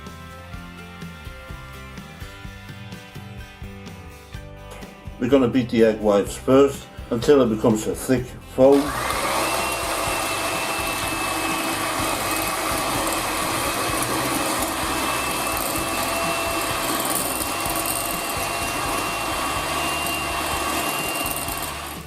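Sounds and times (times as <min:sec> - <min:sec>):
electric mixer whining: 0:08.6 - 0:22.0.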